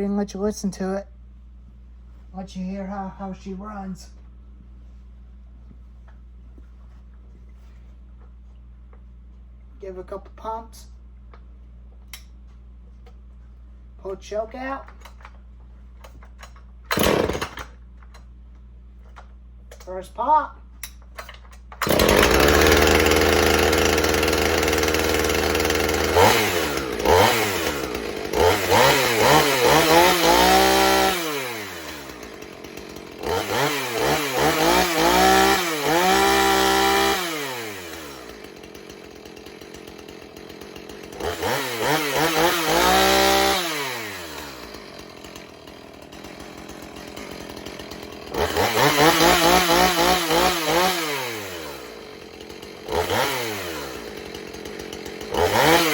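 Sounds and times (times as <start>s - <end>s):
chainsaw engine revving: 16.9s - 17.7s, 21.8s - 55.9s.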